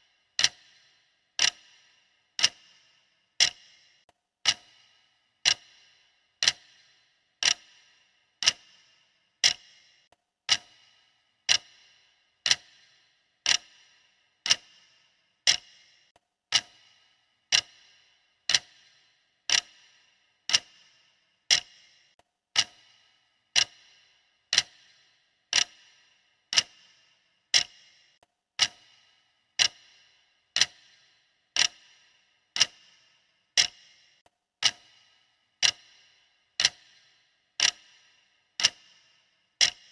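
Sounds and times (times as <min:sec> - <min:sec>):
timer clock ticking: 0:00.0 - 0:39.9.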